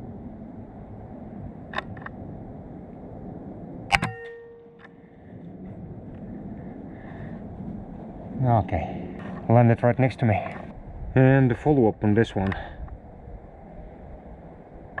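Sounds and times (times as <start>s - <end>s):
low background hum: 0.0s - 15.0s
metallic ringing: 3.9s - 5.2s
faint clicks: 12.4s - 12.7s.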